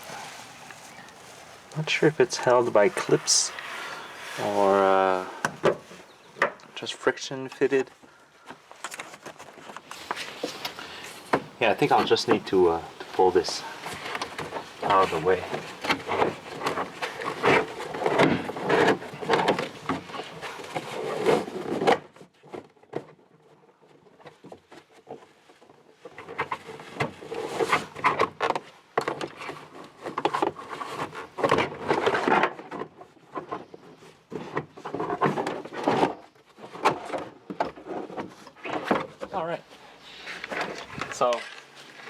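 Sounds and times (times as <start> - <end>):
trim panel rubbing and scraping: 9.9 - 22.0.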